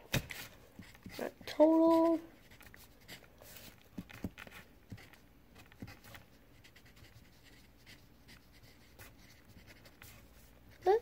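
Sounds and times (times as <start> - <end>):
pen scratching on paper: 0.4 - 11.0.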